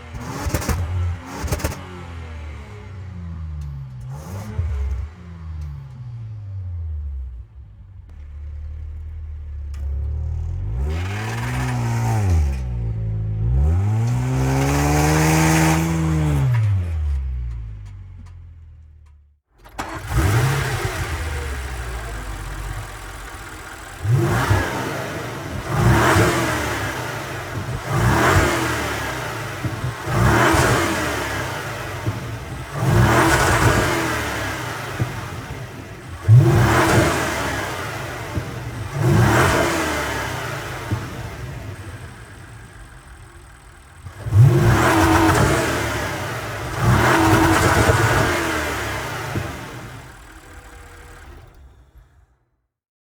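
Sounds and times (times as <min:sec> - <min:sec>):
car engine blipped hard: 0:00.0 - 0:18.2, 0:19.8 - 0:52.4
car engine idling and revving: 0:00.0 - 0:52.6.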